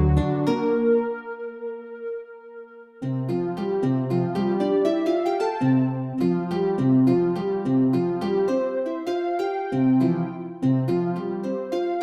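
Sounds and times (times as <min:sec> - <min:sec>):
synthesizer run of notes: 0:00.0 - 0:00.6
synth bass line: 0:00.0 - 0:01.0.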